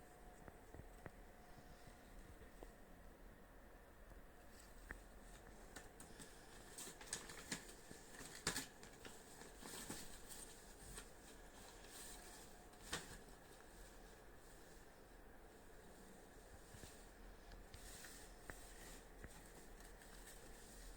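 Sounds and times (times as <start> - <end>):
packaging and clothes rustling: 4.5 - 14.9, 15.7 - 20.9.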